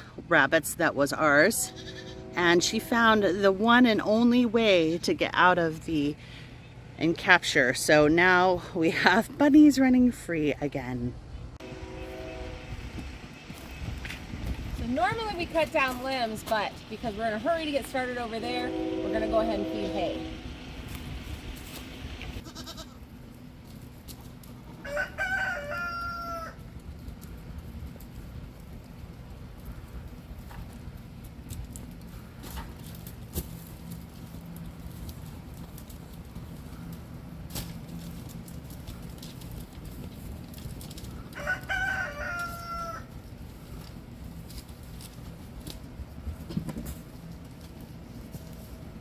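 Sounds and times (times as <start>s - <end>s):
rooster crowing: 24.8s - 26.6s, 41.3s - 43.1s.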